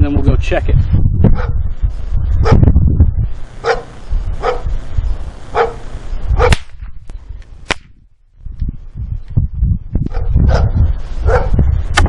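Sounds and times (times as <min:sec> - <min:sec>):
dog barking: 0:03.6 - 0:04.7, 0:05.5 - 0:05.8, 0:10.1 - 0:11.6
sharp crack: 0:05.6 - 0:08.0.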